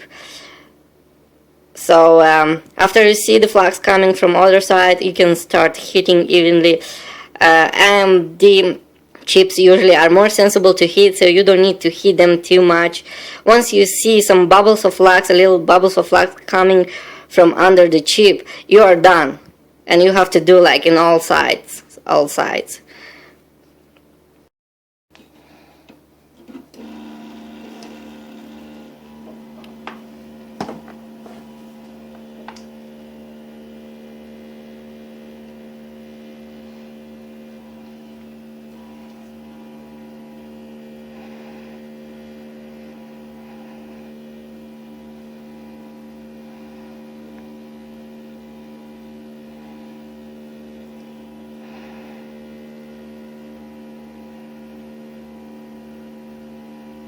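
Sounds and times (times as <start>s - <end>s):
hot air blower humming: 0.0s - 1.0s, 1.7s - 8.8s, 25.3s - 57.0s.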